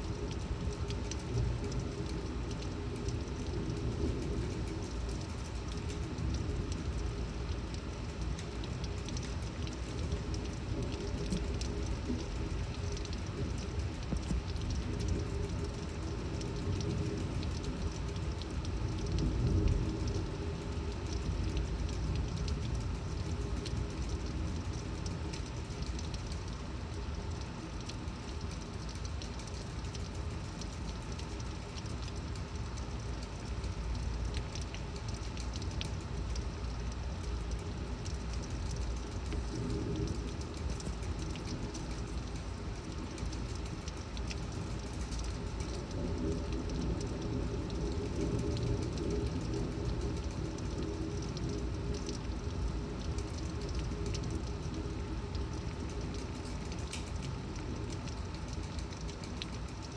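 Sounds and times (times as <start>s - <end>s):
torrential rain pouring: 0.0s - 59.9s
storm wind rumble: 36.6s - 58.2s.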